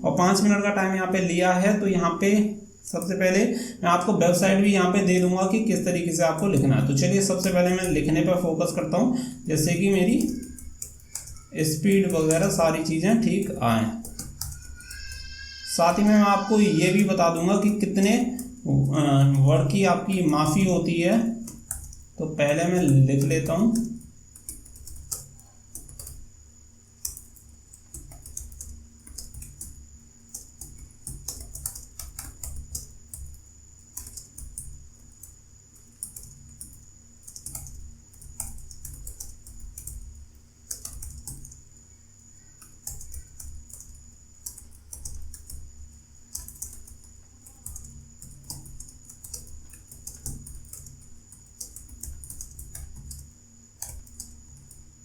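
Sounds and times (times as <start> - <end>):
faint high whine: 0.0 - 21.5
fast typing on keyboard: 0.2 - 26.3, 26.9 - 41.7, 42.4 - 55.0.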